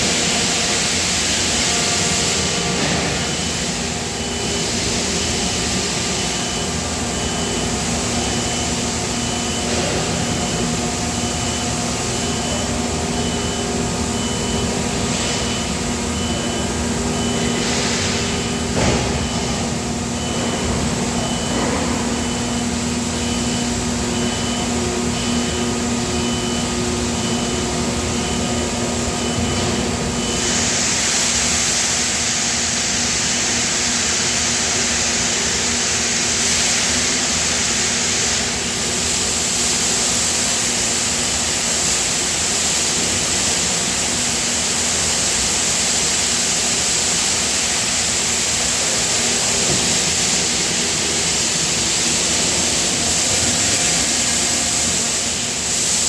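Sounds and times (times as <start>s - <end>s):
die casting machine humming: 0.0s - 56.0s
high beeps: 3.2s - 30.6s.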